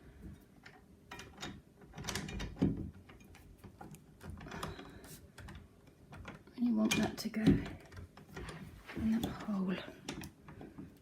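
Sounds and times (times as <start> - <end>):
metal door handle clicking and knocking: 0.6 - 4.8.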